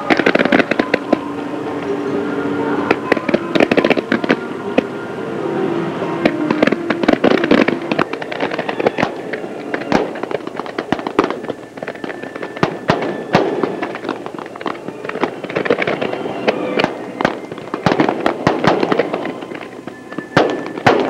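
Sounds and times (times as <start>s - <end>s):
fireworks bangs and crackling: 0.0s - 1.9s, 2.8s - 4.9s, 6.2s - 21.0s.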